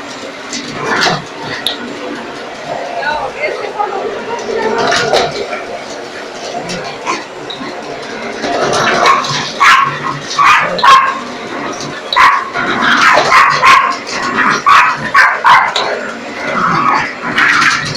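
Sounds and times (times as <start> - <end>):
dogs barking: 4.9 - 17.9.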